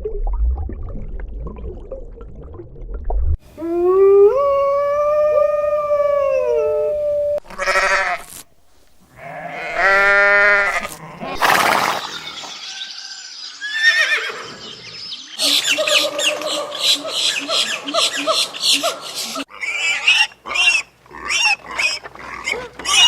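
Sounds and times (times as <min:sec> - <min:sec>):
wavering bleat: 0:07.5 - 0:08.3, 0:09.2 - 0:11.4
farm animal calls: 0:13.6 - 0:23.0.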